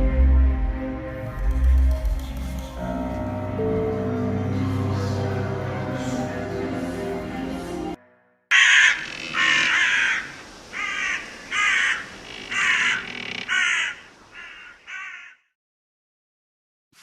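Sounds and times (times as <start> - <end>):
crow cawing: 8.5 - 15.5.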